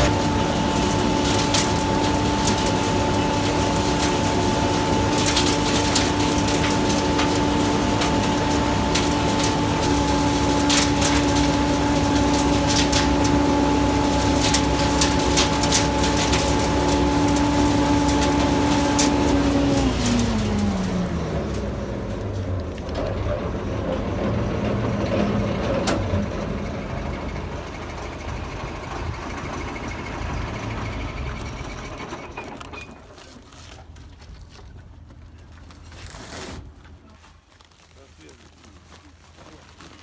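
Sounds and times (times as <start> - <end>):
diesel engine rumble: 0.0 - 40.0.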